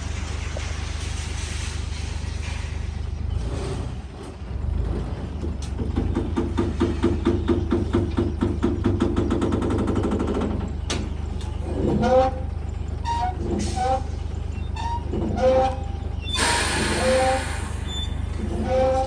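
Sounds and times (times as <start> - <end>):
diesel machinery rumbling: 0.0 - 19.0.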